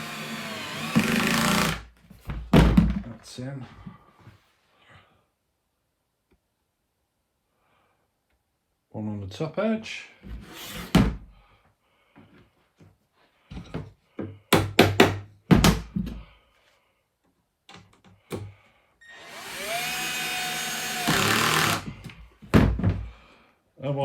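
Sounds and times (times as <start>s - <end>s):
power driver driving screw: 0.0s - 1.8s, 19.0s - 21.9s.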